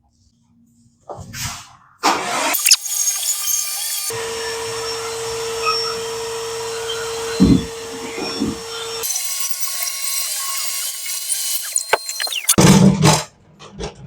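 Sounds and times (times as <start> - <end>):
machine motor whining: 2.4 - 12.6.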